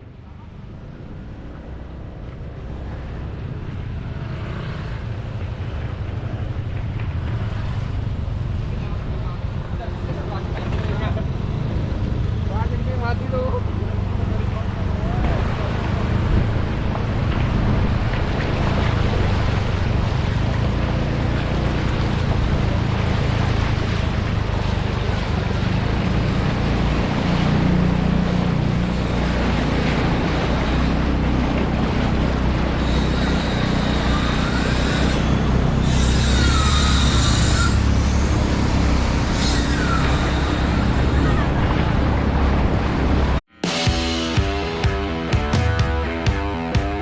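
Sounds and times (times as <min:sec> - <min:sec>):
vehicle engines rumbling: 0:00.0 - 0:47.0
water wash: 0:00.0 - 0:47.0
short high squeals: 0:32.7 - 0:41.6.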